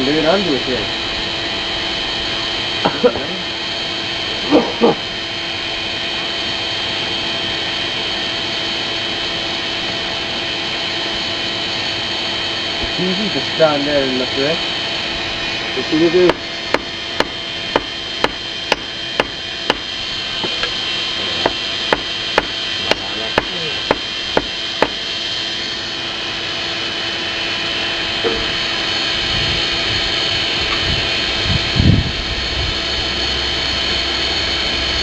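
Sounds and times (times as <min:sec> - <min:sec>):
forge air blower droning: 0:00.0 - 0:35.0
hammer striking steel on anvil: 0:16.3 - 0:20.8, 0:21.4 - 0:25.0.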